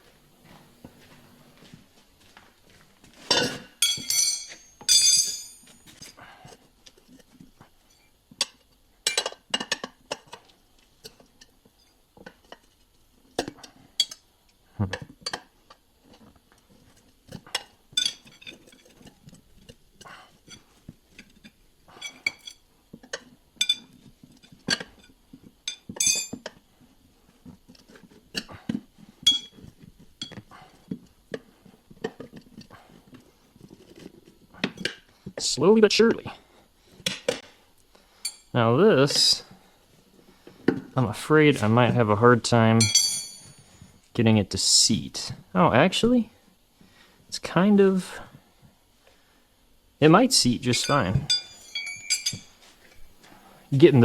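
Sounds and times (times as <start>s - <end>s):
tools clanking on steel rim: 3.2s - 6.0s, 25.7s - 26.5s, 42.8s - 43.7s, 50.6s - 53.1s.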